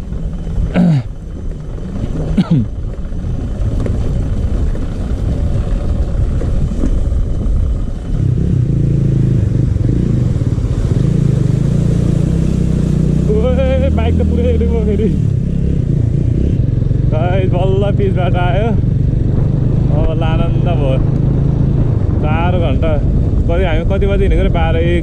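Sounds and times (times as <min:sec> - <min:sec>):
motorbike engine running off-road: 0:00.0 - 0:25.0.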